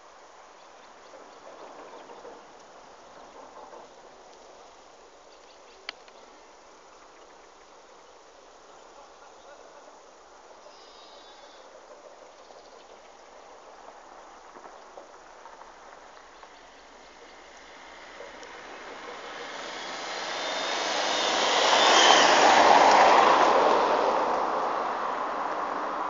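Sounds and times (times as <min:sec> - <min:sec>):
vehicle passing by: 0:16.6 - 0:26.0.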